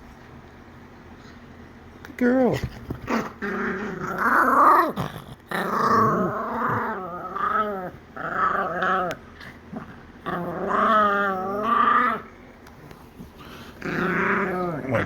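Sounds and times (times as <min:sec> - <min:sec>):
dog growling: 0:03.0 - 0:12.4, 0:13.2 - 0:15.0.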